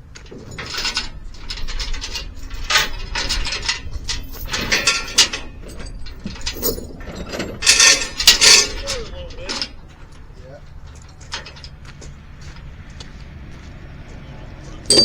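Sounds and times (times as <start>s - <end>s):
steel chains clanking: 0.1s - 11.9s.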